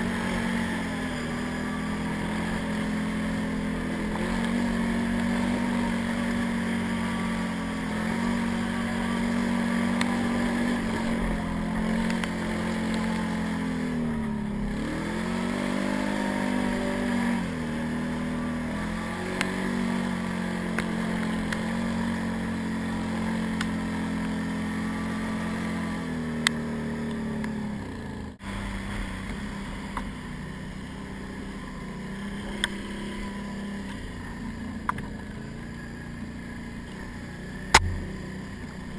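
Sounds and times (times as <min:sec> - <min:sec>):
atv engine running: 0:00.0 - 0:38.9
sharp clicks: 0:37.7 - 0:38.1.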